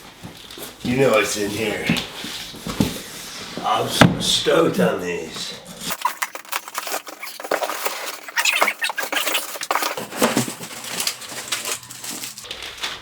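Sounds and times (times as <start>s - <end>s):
packaging rustling and crinkling: 5.8s - 13.0s.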